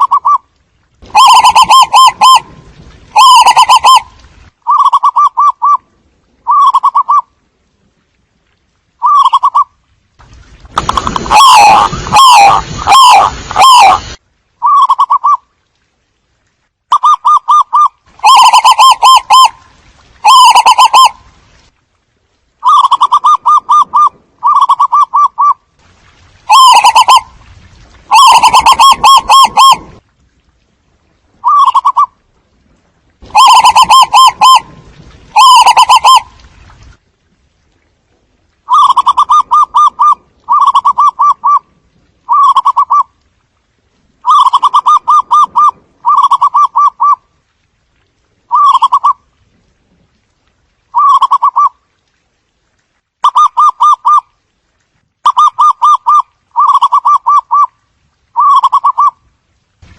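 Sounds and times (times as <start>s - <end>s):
doves cooing: 1.1s - 2.4s, 33.3s - 34.7s, 35.4s - 36.2s, 44.2s - 47.2s, 48.5s - 49.2s, 50.9s - 51.8s, 58.4s - 59.2s.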